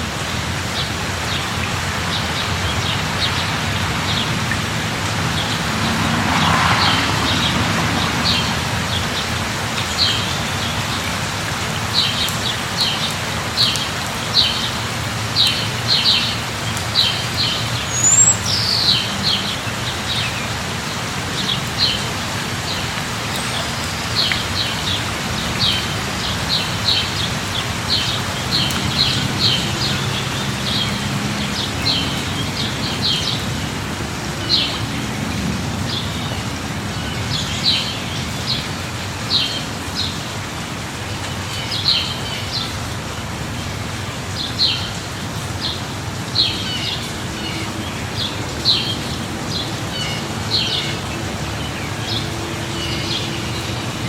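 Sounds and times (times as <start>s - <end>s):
light rain falling: 0.0s - 54.0s
small birds chirping: 15.4s - 19.6s.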